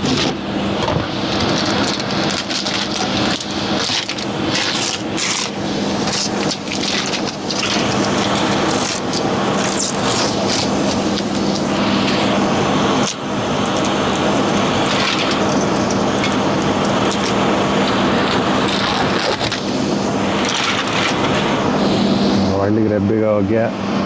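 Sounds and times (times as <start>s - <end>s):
air handler blower running: 0.0s - 24.0s.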